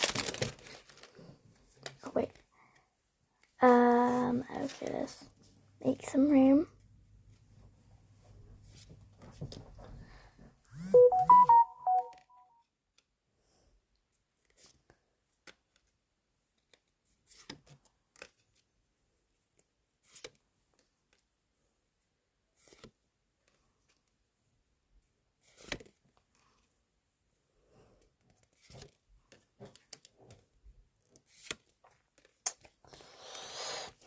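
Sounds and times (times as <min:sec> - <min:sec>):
trading cards and wrappers handled: 0:00.0 - 0:02.4, 0:28.0 - 0:30.2, 0:31.0 - 0:34.0
electronic beeping jingle: 0:10.8 - 0:12.3.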